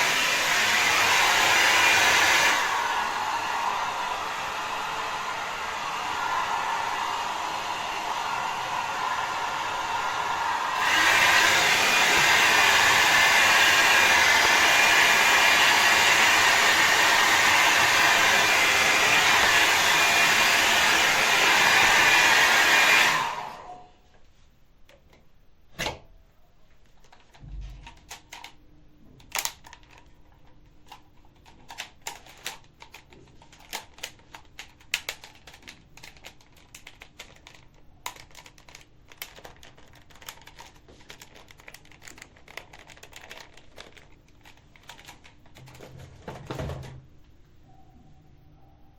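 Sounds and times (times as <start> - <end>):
hair dryer blowing: 0.0 - 23.9.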